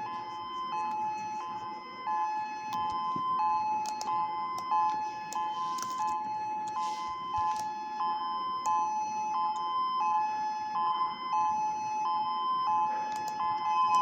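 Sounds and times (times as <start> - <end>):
warning siren hi-lo tone: 0.0 - 14.0.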